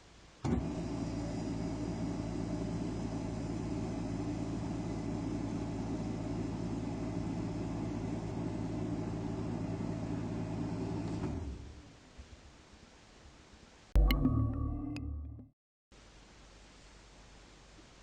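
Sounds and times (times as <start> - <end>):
air compressor running: 0.6 - 11.4.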